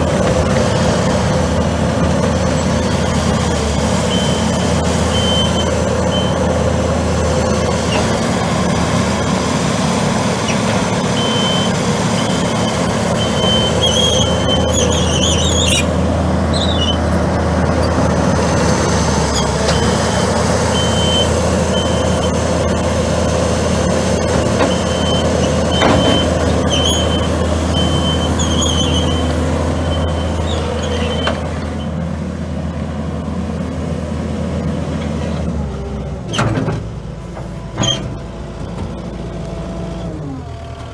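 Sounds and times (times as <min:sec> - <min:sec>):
loader diesel engine running: 0:00.0 - 0:40.9
short high squeals: 0:11.2 - 0:15.9, 0:16.5 - 0:17.0, 0:24.7 - 0:31.9.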